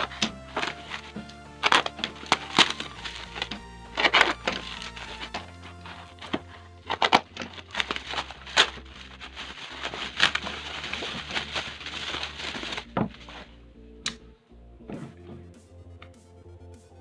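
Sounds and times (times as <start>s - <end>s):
wrapping being torn and crumpled: 0.0s - 13.5s.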